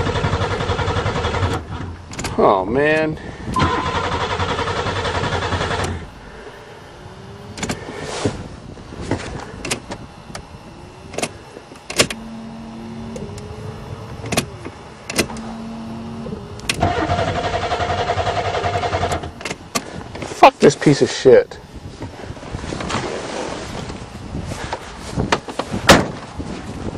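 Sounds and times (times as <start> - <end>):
engine cranking without starting: 0.0 - 2.4, 3.5 - 6.5, 16.1 - 20.0.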